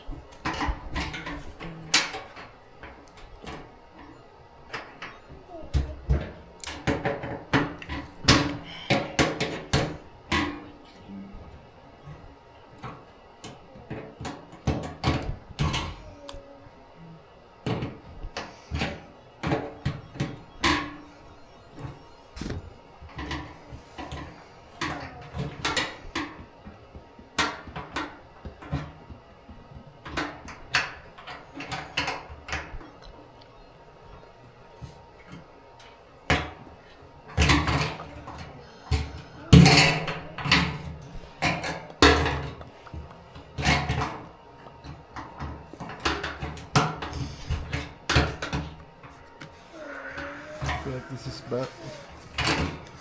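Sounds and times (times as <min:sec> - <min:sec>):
knocks and clunks of tools: 0:17.6 - 0:33.1, 0:34.8 - 0:49.6, 0:50.6 - 0:53.0.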